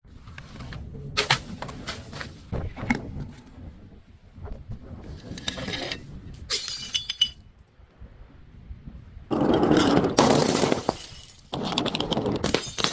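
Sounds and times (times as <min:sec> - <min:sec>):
glass cracking and crunching: 0:10.2 - 0:12.9.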